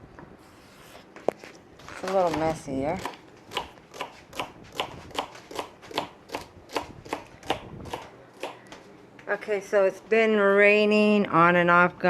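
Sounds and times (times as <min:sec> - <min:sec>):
knife chopping on cutting board: 0:02.0 - 0:08.6.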